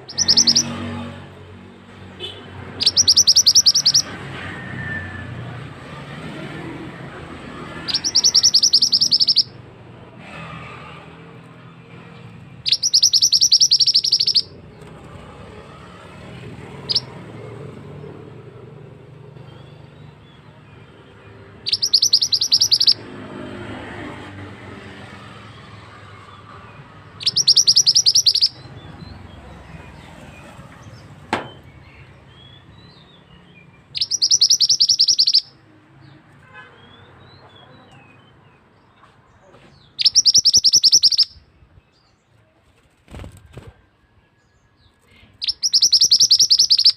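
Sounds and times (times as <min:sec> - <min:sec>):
faint bird chirps: 0:00.0 - 0:00.8, 0:07.9 - 0:09.5, 0:12.7 - 0:14.5, 0:21.7 - 0:23.0, 0:27.2 - 0:28.7, 0:34.0 - 0:35.6, 0:40.0 - 0:42.0, 0:44.9 - 0:46.9
high-pitched bird trill: 0:00.0 - 0:01.2, 0:02.8 - 0:04.1, 0:07.6 - 0:09.6, 0:12.6 - 0:14.6, 0:16.8 - 0:17.2, 0:21.6 - 0:23.0, 0:27.2 - 0:29.2, 0:33.9 - 0:35.6, 0:40.0 - 0:41.5, 0:45.4 - 0:46.9.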